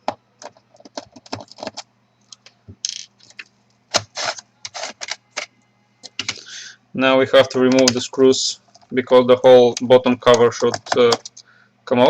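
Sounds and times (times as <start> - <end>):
laptop plastic scraping: 3.9 - 5.5
hand tools clicking and tapping: 10.3 - 11.4.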